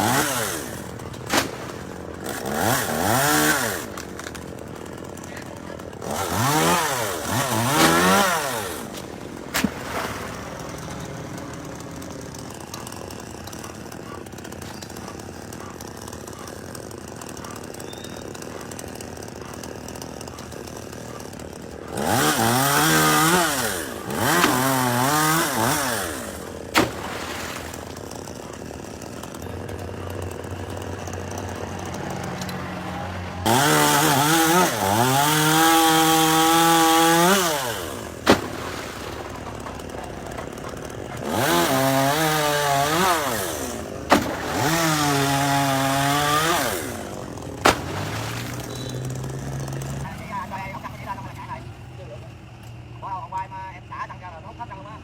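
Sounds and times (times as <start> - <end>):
chainsaw revving: 0.0 - 51.2.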